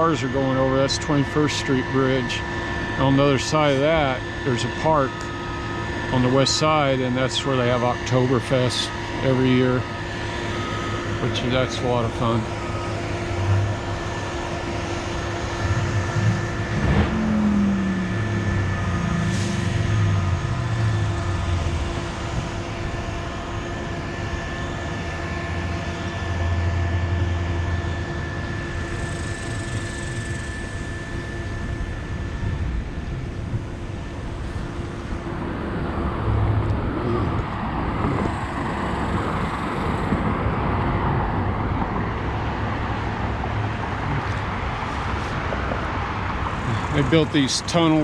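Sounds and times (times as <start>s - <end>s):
steady engine drone: 0.0s - 48.0s
rough rumbling noise: 6.2s - 23.5s.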